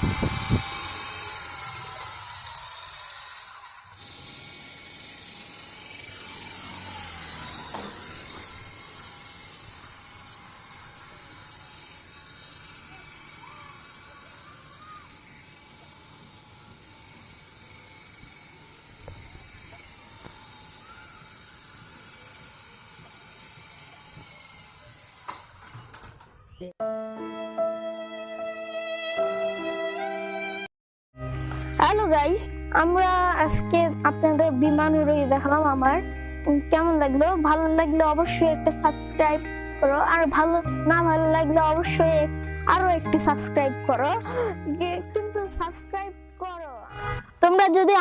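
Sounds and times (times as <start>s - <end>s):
toy helicopter rotor whine: 0.0s - 26.5s, 41.6s - 46.8s.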